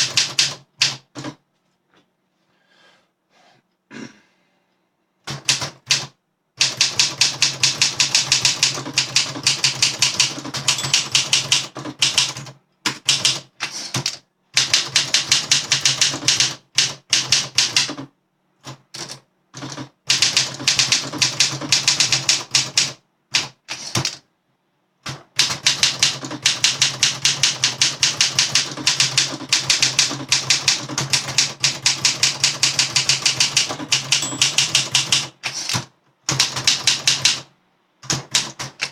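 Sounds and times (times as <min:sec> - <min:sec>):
typewriter key strikes: 0:06.6 - 0:13.3, 0:31.1 - 0:37.4.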